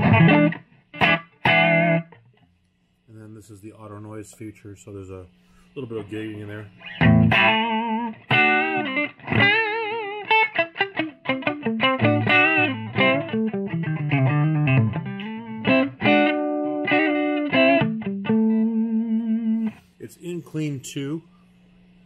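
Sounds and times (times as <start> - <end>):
electric guitar notes and chords: 0.0 - 2.4, 6.8 - 19.9.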